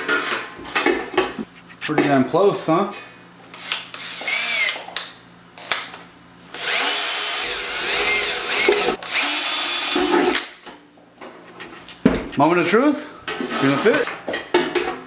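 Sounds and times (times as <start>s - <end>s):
power drill cutting metal: 3.6s - 4.8s, 6.5s - 10.5s.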